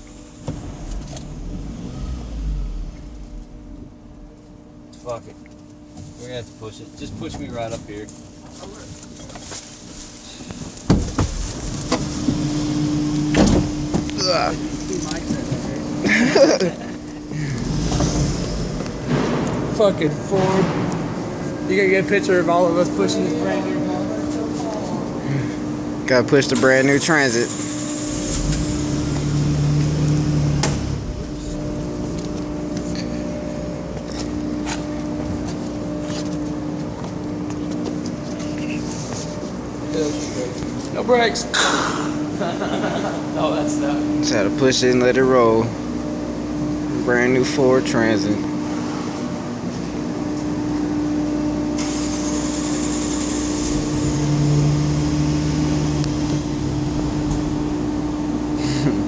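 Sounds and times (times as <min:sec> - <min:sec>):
low droning note: 0:00.0 - 0:05.4, 0:11.6 - 0:24.1, 0:28.0 - 0:36.7, 0:53.6 - 0:58.6
low rumble: 0:00.0 - 0:05.8, 0:11.2 - 0:24.1, 0:27.7 - 0:35.2, 0:53.5 - 0:58.6
steady mechanical hum: 0:00.0 - 0:59.0.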